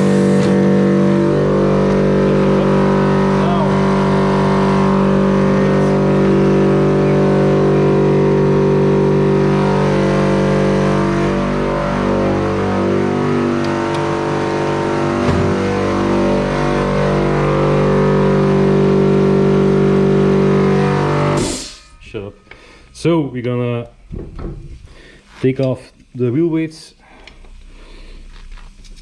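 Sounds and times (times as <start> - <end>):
electric motor humming: 0.0 - 21.5.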